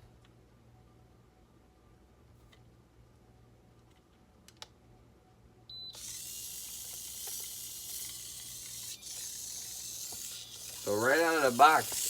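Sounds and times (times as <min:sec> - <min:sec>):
toy car electric motor whirring: 0:05.9 - 0:12.0.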